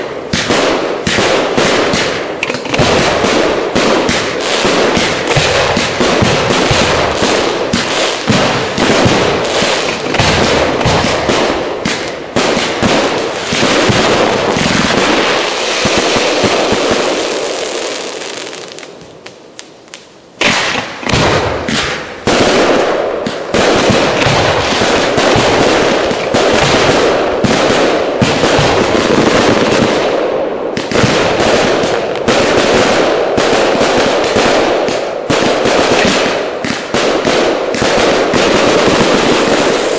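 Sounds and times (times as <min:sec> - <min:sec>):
fireworks barrage: 0:00.0 - 0:39.9
sharp firework bang: 0:20.4 - 0:28.9.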